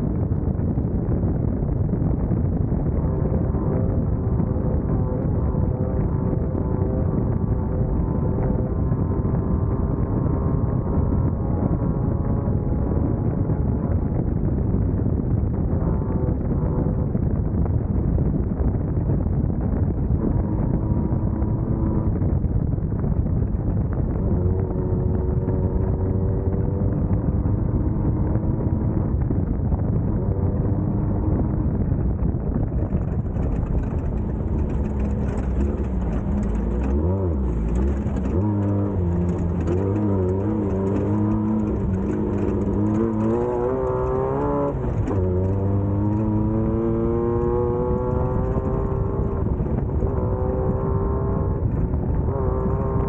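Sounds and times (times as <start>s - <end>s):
race car engine revving: 24.1s - 29.0s, 32.8s - 53.0s.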